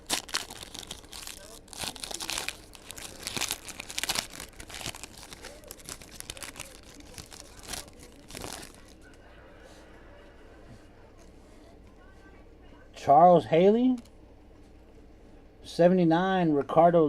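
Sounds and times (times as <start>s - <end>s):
wrappers tearing and crinkling: 0.0s - 9.1s.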